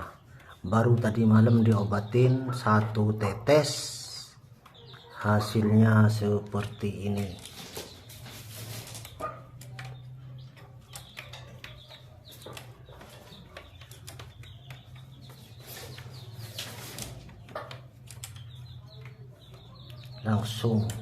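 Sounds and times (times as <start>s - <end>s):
clicks and taps: 9.0s - 21.0s.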